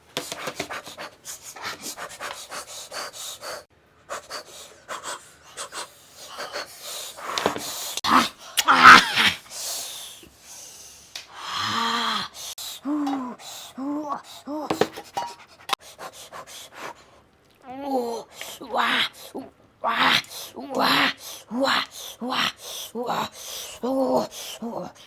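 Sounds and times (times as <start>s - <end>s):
person gasping and panting: 0.7s - 17.1s
wet chewing and lip-smacking: 17.2s - 17.7s.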